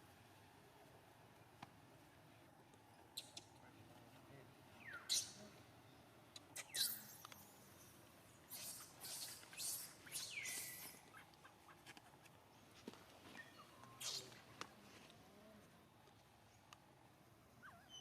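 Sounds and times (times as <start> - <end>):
monkey squeaks and chirps: 3.2 - 3.5, 4.8 - 5.4, 6.4 - 7.6, 8.5 - 11.8, 13.4 - 14.4, 17.6 - 18.0.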